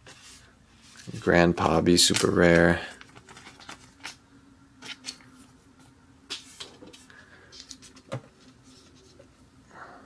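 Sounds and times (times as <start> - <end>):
cards rustling in plastic sleeves: 0.0 - 4.2, 4.8 - 5.6, 6.3 - 9.3
faint steady hum: 0.0 - 10.0.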